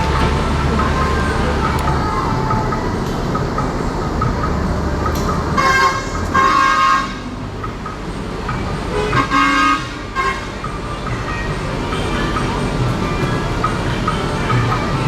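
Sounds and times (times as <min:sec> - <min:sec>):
bus engines and traffic: 0:00.0 - 0:15.0
musical bus air horn: 0:05.5 - 0:07.6, 0:08.8 - 0:15.0.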